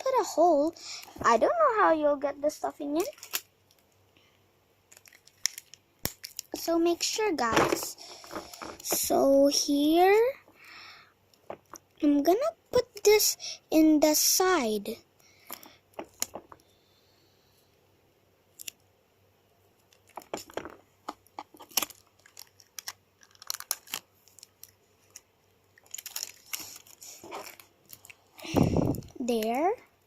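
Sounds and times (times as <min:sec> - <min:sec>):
sticky tape crackling: 0:02.9 - 0:03.8, 0:04.9 - 0:09.4, 0:19.8 - 0:29.8
paper crinkling: 0:03.0 - 0:03.8, 0:04.9 - 0:06.6, 0:07.4 - 0:09.0, 0:21.4 - 0:29.6.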